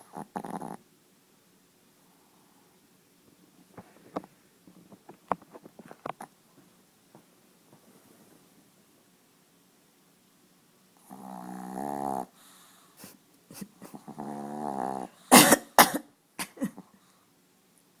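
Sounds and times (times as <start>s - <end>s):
dog snoring: 0.0s - 0.8s, 11.0s - 13.2s, 13.8s - 15.4s.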